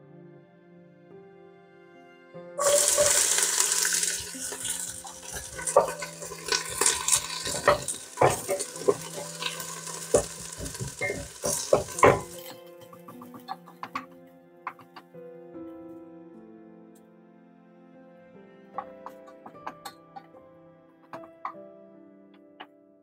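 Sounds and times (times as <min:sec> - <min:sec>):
food sizzling in a pan: 0:02.6 - 0:13.5
utensils scraping a pan: 0:02.6 - 0:14.0.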